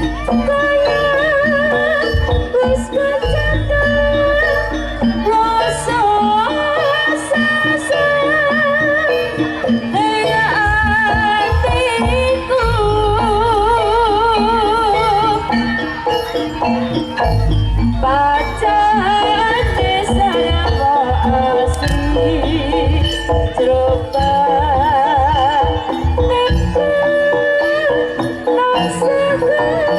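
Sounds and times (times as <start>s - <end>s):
high melody with wide vibrato: 0.0s - 29.9s.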